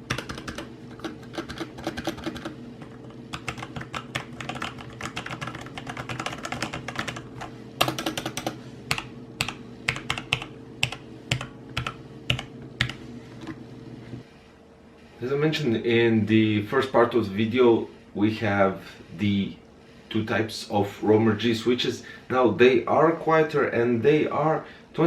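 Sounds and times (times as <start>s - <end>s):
mechanical keyboard typing: 0.0s - 13.0s.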